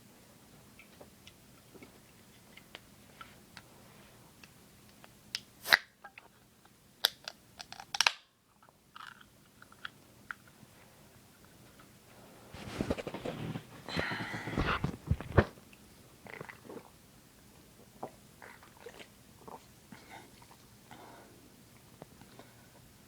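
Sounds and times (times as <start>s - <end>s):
person drinking soda: 12.6s - 15.6s, 16.3s - 17.0s.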